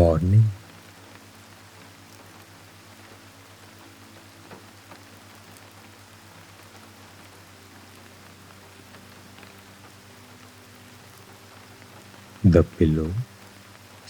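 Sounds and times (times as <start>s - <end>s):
faint low hum: 0.0s - 0.6s, 12.4s - 13.4s
soft steady rain: 0.0s - 14.0s.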